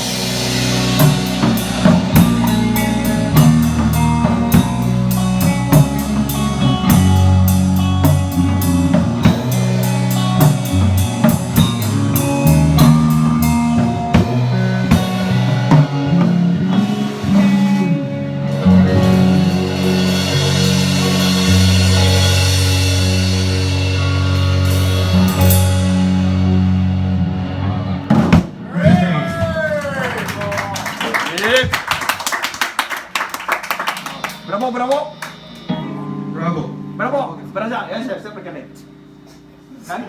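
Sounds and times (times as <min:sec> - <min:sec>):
drum hits: 0:00.0 - 0:17.6, 0:28.1 - 0:29.7
rock band playing: 0:00.0 - 0:39.8.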